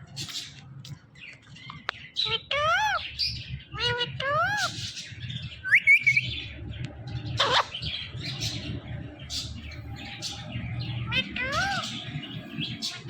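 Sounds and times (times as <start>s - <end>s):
parrot squawking: 2.2s - 4.9s, 7.3s - 8.6s, 9.3s - 13.0s
parrot chirping: 2.2s - 6.3s, 7.3s - 13.0s
parrot whistling: 5.6s - 6.2s.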